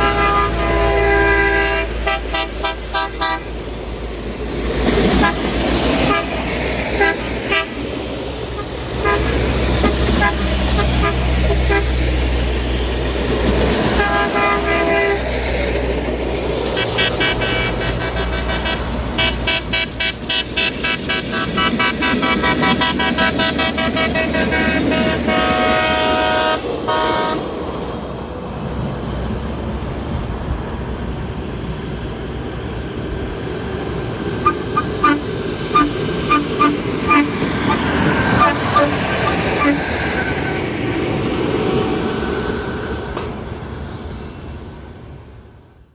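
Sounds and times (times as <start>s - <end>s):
air horns blowing: 0.0s - 3.6s, 5.1s - 7.9s, 8.5s - 12.2s, 13.7s - 15.6s, 16.6s - 27.4s, 34.4s - 40.7s
vehicle noise: 0.0s - 45.9s.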